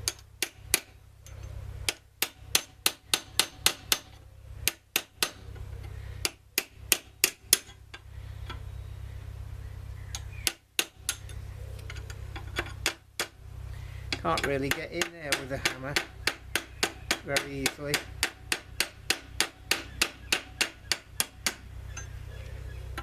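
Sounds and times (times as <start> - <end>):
hammer tapping metal punch: 1.9 - 5.4, 12.4 - 13.4, 14.1 - 22.1.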